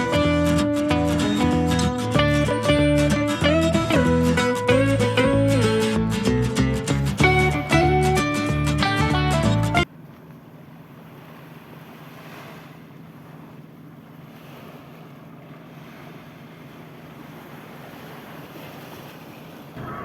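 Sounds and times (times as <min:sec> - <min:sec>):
surf washing ashore: 0:10.7 - 0:20.0.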